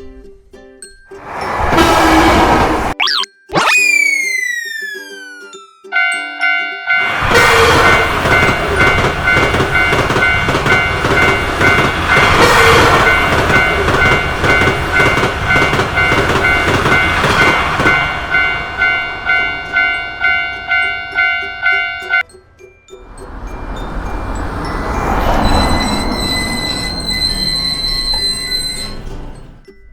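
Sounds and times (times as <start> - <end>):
train rumbling over crossing: 1.2 - 3.0, 6.8 - 22.2, 23.0 - 29.6
level-crossing alarm bell clanging: 5.9 - 22.3, 22.9 - 29.6.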